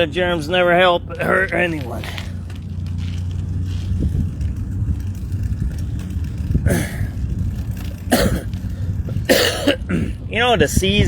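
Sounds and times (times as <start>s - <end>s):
steady low rumble: 0.0s - 11.0s
man coughing: 8.1s - 8.5s, 9.3s - 10.2s.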